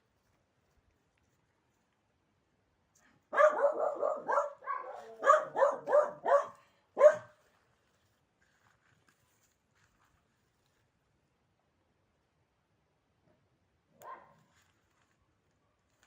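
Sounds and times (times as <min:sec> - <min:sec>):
small dog barking: 0:03.3 - 0:07.4, 0:14.0 - 0:14.5.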